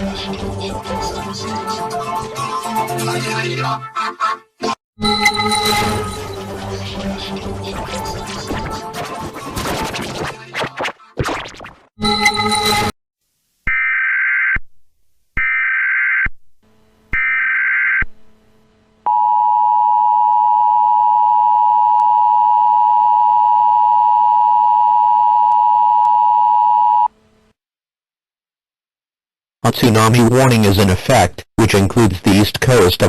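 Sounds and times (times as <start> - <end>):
two-tone attention signal: 5.0 - 6.4.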